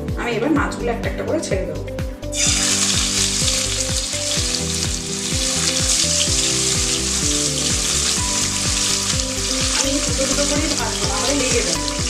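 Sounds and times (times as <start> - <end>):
fish sizzling in hot oil: 2.4 - 12.0.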